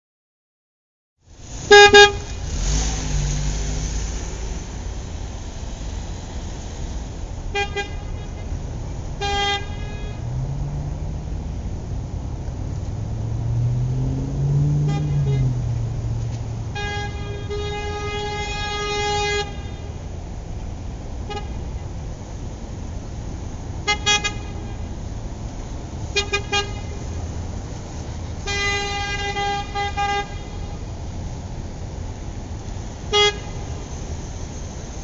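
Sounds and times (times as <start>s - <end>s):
low traffic rumble: 1.2s - 35.0s
car horns honking: 1.6s - 3.1s, 7.5s - 10.5s, 13.9s - 20.0s, 21.2s - 21.9s, 23.8s - 25.0s, 26.0s - 27.2s, 28.4s - 30.9s, 33.0s - 34.0s.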